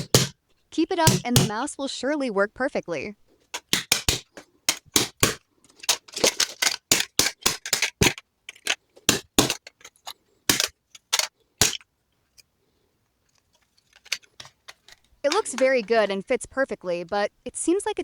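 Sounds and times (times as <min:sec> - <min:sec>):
plastic mouse parts clicking: 0:03.5 - 0:12.5, 0:13.4 - 0:16.2.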